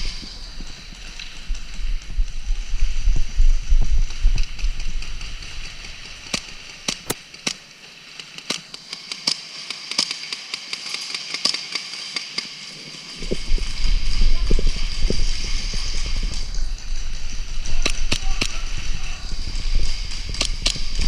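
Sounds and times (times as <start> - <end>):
airsoft guns firing: 17.6 - 21.0.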